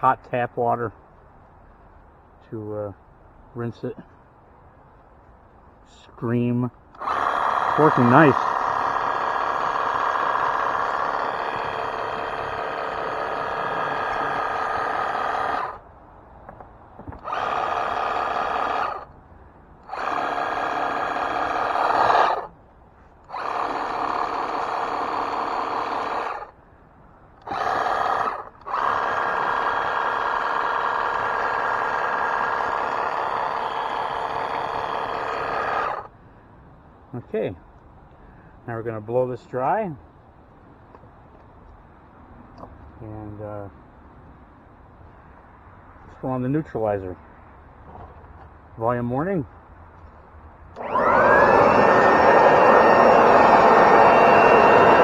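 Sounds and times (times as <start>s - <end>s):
pressure washer whining: 6.9s - 15.8s, 17.2s - 19.0s, 19.8s - 22.5s, 23.2s - 26.5s, 27.4s - 36.1s, 50.8s - 55.0s.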